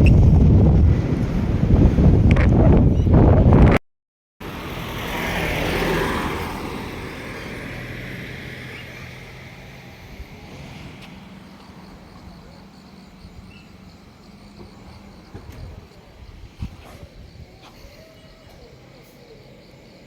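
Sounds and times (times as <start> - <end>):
wind on microphone: 0.0 - 3.8, 15.4 - 18.0
vehicle passing by: 4.4 - 16.2.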